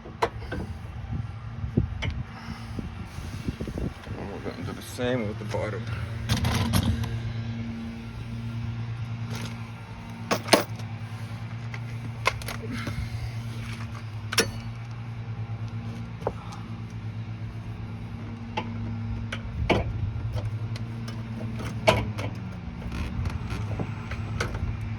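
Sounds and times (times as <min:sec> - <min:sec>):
steady low hum: 0:00.0 - 0:24.9
metal tools clinking: 0:10.3 - 0:10.8, 0:13.7 - 0:14.8.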